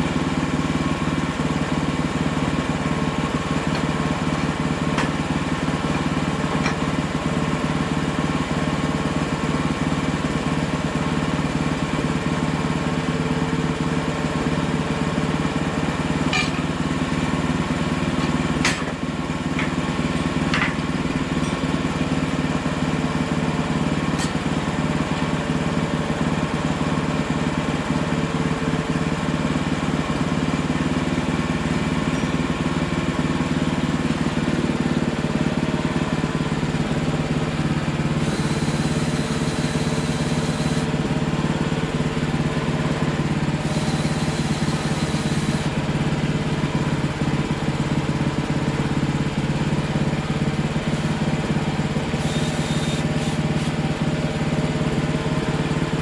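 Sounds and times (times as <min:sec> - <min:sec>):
sawmill engine running: 0:00.0 - 0:56.0.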